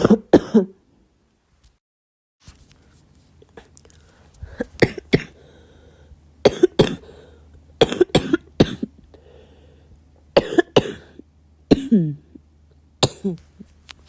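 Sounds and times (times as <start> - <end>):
girl coughing: 0.0 - 0.8, 4.5 - 5.4, 6.4 - 8.9, 10.4 - 12.3, 13.0 - 13.4.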